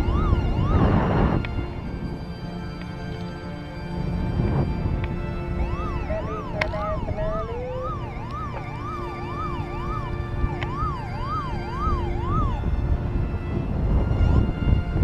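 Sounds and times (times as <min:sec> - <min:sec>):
siren-like sweeping tone: 0:00.0 - 0:01.4, 0:05.3 - 0:12.9
wind buffeting microphone: 0:00.0 - 0:15.0
steady held tones: 0:05.6 - 0:12.6.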